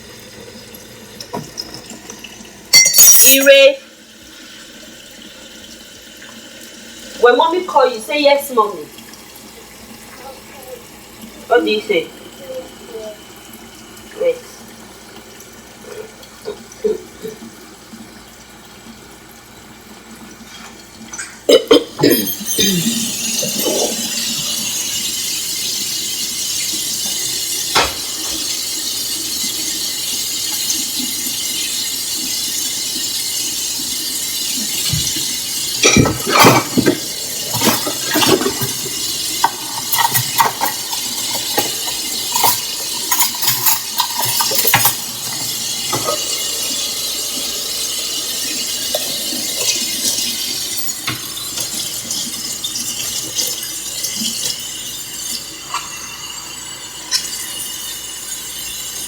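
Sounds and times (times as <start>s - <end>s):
utensils clinking against dishes: 1.3s - 3.8s, 20.5s - 32.8s, 34.2s - 59.0s.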